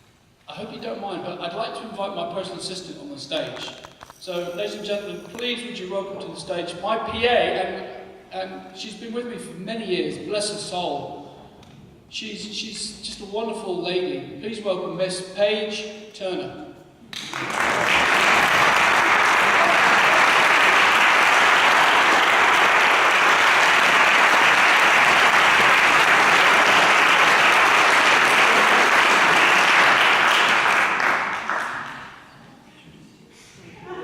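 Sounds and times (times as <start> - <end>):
audience applauding: 17.2 - 32.3.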